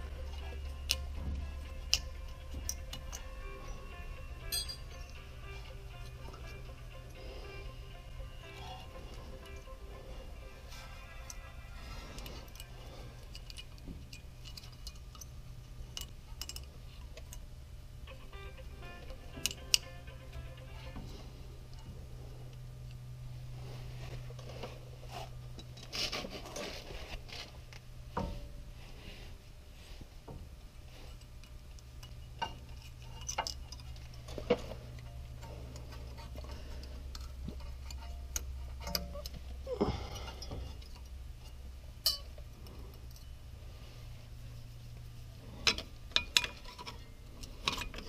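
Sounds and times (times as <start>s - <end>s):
steady low hum: 0.0s - 48.0s
metal brake parts clinking: 0.3s - 7.2s, 40.2s - 42.4s, 45.6s - 48.0s.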